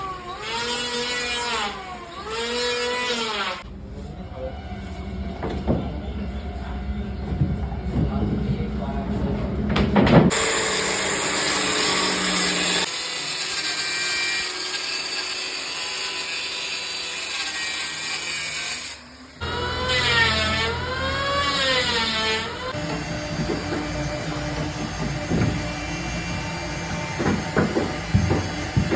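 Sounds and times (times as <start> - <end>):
power tools hissing: 10.3 - 19.8
scattered knocks: 27.1 - 28.9.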